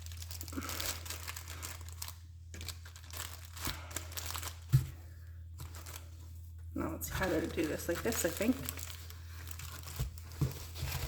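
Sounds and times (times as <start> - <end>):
paper and fabric rustling: 7.0 - 11.0.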